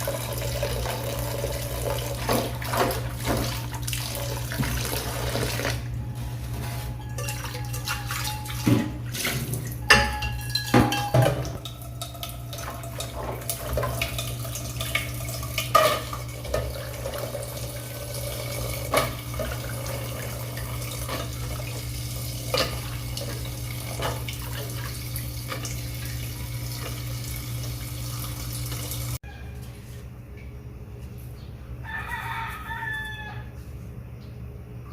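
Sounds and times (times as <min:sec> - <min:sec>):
tap water running into sink: 0:00.0 - 0:05.8, 0:10.4 - 0:29.2
dishes clinking and knocking: 0:07.0 - 0:12.2.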